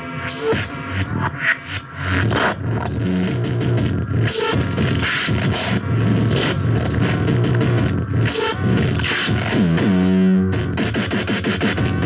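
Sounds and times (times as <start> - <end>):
loud music: 0.0 - 12.0.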